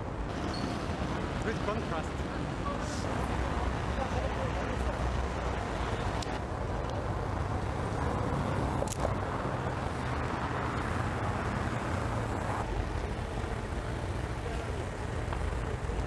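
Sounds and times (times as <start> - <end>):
road traffic rumble: 0.0 - 16.0.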